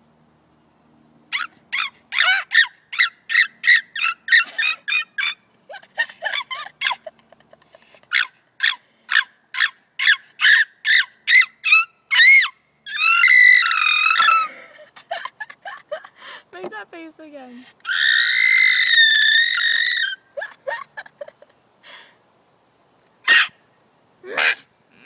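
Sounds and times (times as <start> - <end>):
girl squealing: 12.1 - 14.8, 17.8 - 20.9.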